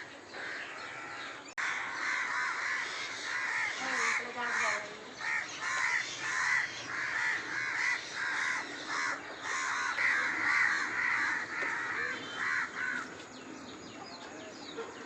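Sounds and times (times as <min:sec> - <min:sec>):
crows cawing: 0:00.0 - 0:13.2.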